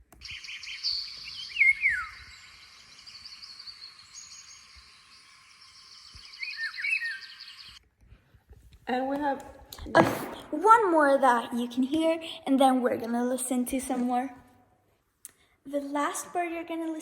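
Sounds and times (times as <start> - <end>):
high chirping background: 0.0 - 7.8
bird singing fluty whistles: 0.2 - 7.8.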